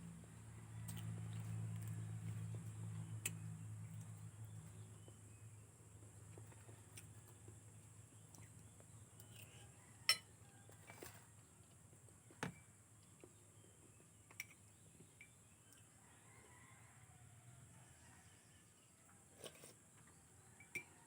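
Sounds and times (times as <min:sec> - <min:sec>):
spoon clinking against bowl: 0:10.1 - 0:10.3.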